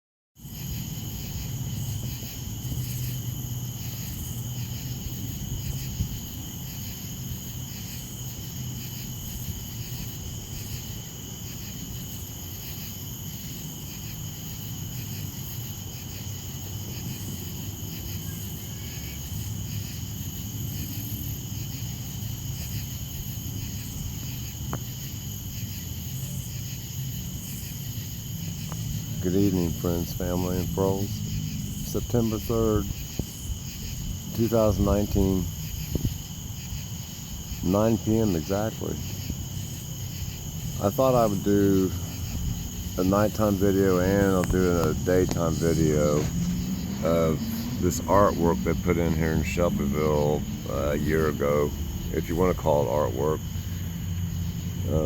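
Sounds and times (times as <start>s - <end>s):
crickets and insects trilling: 0.4s - 55.0s
low steady rumble: 27.4s - 55.0s.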